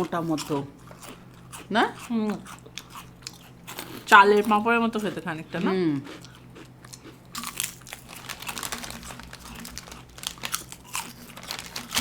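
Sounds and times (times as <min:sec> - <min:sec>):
crackers crunching being chewed: 0:00.0 - 0:12.0
crinkling: 0:07.4 - 0:12.0.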